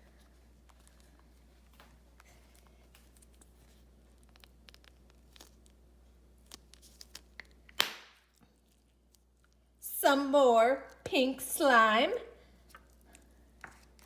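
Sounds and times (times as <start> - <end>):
plastic capsule crinkling and clicking: 3.0 - 5.8, 6.4 - 8.0.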